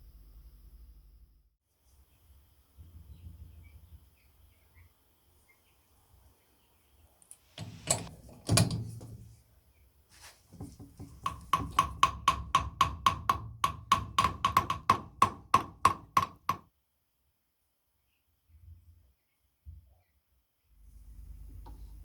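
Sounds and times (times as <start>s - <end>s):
hammer blows on wood: 10.6s - 16.6s.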